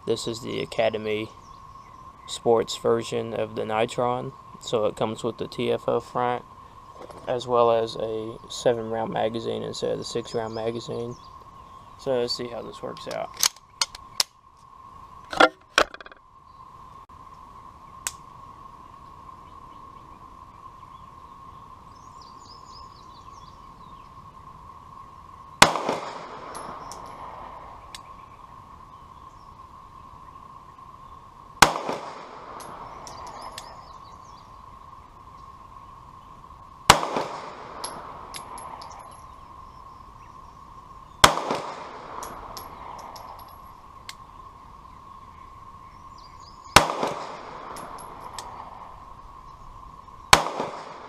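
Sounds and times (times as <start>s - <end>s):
pistol gunshots echoing: 25.6s - 26.8s, 31.6s - 32.8s, 36.9s - 38.1s, 41.2s - 42.4s, 46.8s - 48.0s, 50.4s - 51.0s.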